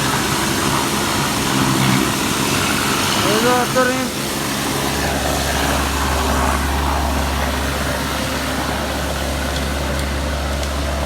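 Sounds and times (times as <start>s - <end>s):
machine droning with hiss: 0.0s - 11.0s.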